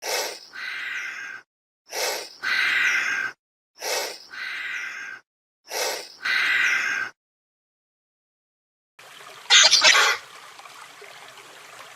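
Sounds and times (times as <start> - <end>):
high-pitched animal call: 9.5 - 10.2.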